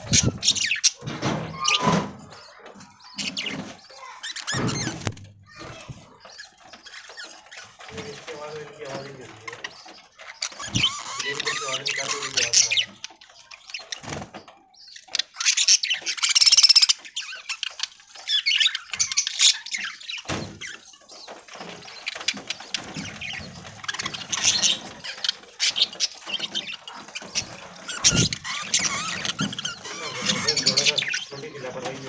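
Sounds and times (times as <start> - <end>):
budgerigars chattering and squawking: 0.0 - 32.0.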